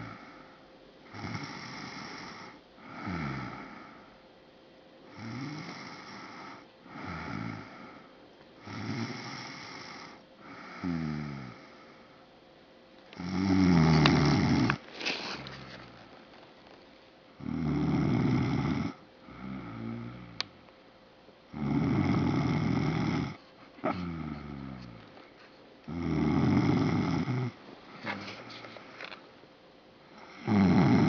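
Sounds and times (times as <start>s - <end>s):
heavy snoring: 1.1s - 4.0s, 5.1s - 8.0s, 8.6s - 11.8s, 13.2s - 16.1s, 17.4s - 20.5s, 21.5s - 25.1s, 25.9s - 28.4s, 30.1s - 31.0s.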